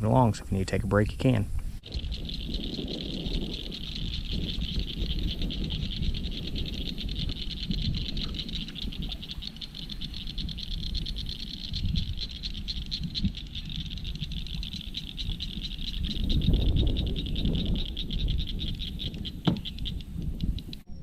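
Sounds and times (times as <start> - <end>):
low rumble: 1.5 - 21.0
animals calling in chorus: 1.8 - 20.8.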